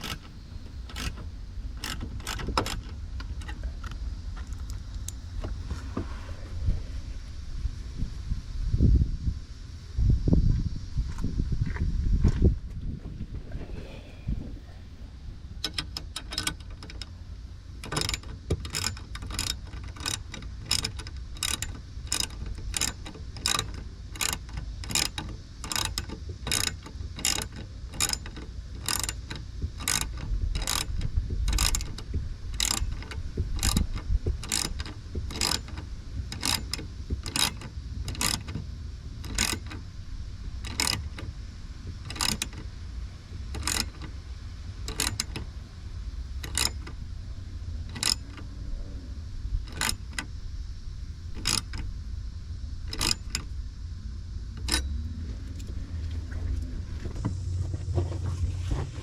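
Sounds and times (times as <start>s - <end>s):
ratchet wrench clicking: 0.0s - 5.3s, 15.6s - 17.2s, 17.8s - 38.6s, 39.2s - 39.9s, 40.6s - 41.3s, 42.0s - 42.7s, 43.4s - 44.2s, 44.9s - 45.5s, 46.4s - 47.0s, 47.8s - 48.5s, 49.7s - 50.3s, 51.3s - 51.9s, 52.8s - 53.6s, 54.6s - 54.9s.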